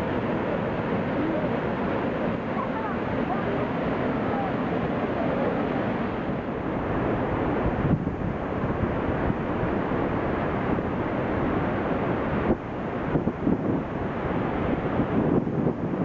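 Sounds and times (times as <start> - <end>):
waterfall rushing: 0.0 - 7.7
wind buffeting microphone: 3.3 - 16.0.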